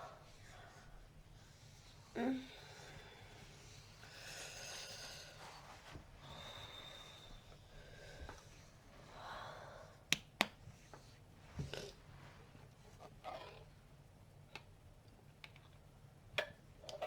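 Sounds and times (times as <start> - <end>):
person breathing: 0.0 - 10.1.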